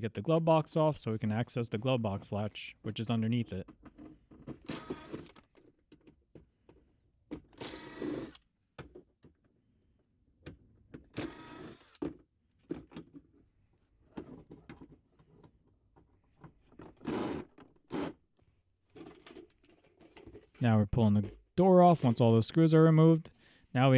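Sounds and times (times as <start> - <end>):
power screwdriver running: 11.2 - 12.0
small clicks and handling noise: 18.9 - 21.5.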